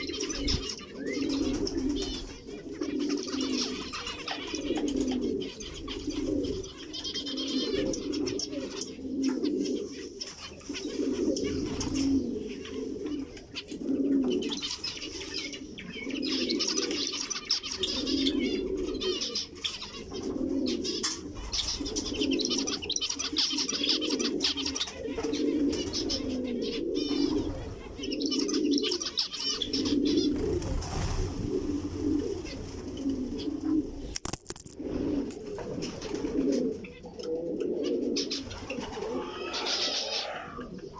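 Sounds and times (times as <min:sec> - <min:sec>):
finches chirping: 0:00.0 - 0:31.0
doves cooing: 0:00.0 - 0:40.9.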